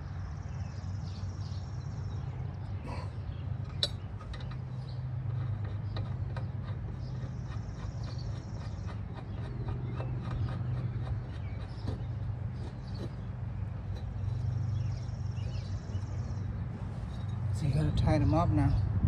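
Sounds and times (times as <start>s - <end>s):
steady low hum: 0.0s - 19.0s
light handling clicks and knocks: 3.6s - 13.2s.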